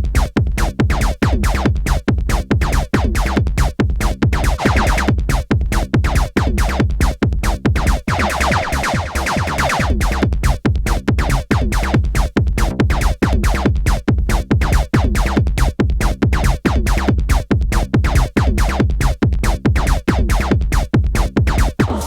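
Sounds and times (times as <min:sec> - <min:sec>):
electronic dance music: 0:04.4 - 0:05.2, 0:07.8 - 0:10.2, 0:21.5 - 0:22.0.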